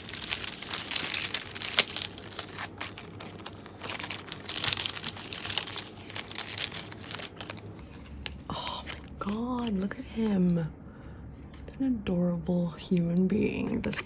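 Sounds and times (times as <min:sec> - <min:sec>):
plastic wrapping crinkling: 0:00.0 - 0:07.8.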